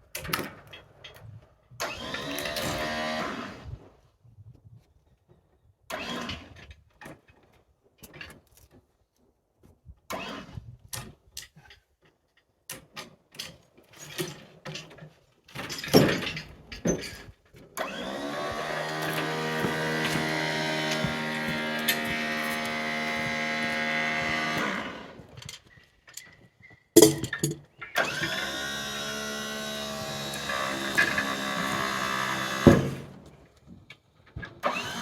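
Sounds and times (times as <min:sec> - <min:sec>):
chainsaw pull cord: 0:01.8 - 0:03.4, 0:17.8 - 0:25.6, 0:27.0 - 0:33.2
chainsaw engine running: 0:17.9 - 0:25.3, 0:28.1 - 0:33.1
knocks and clatter: 0:27.0 - 0:27.6.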